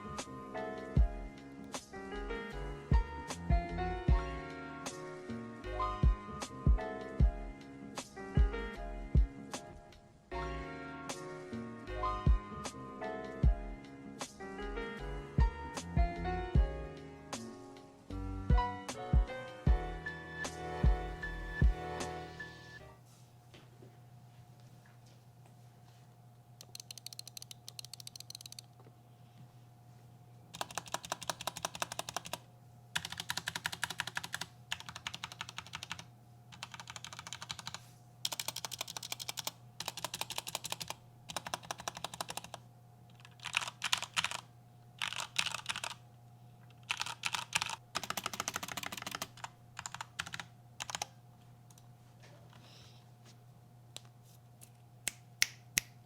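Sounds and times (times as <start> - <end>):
mechanical keyboard typing: 26.6 - 28.7, 30.5 - 32.4, 33.0 - 46.0, 46.7 - 51.1.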